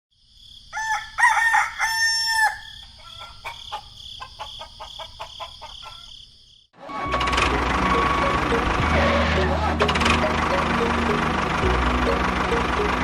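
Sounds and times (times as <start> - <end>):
rooster crowing: 0.7 - 6.2
rooster clucking: 0.8 - 6.2
high-pitched drone: 6.8 - 13.0.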